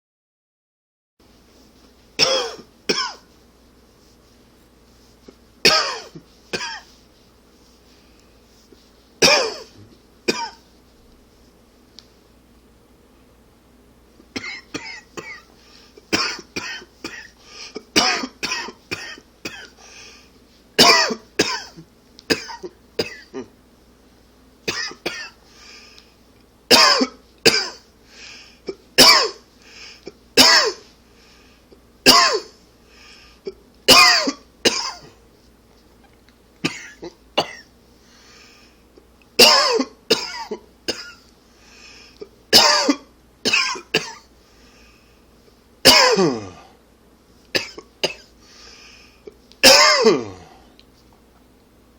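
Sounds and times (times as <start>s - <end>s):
man coughing: 2.2s - 3.2s, 5.6s - 6.9s, 9.2s - 10.6s, 14.4s - 15.5s, 16.1s - 19.8s, 20.8s - 23.5s, 24.7s - 25.4s, 26.7s - 27.8s, 28.7s - 29.4s, 30.0s - 30.9s, 32.0s - 32.6s, 33.5s - 35.2s, 36.6s - 37.7s, 39.4s - 41.2s, 42.5s - 44.3s, 45.8s - 46.7s, 47.5s - 48.3s, 49.2s - 50.6s.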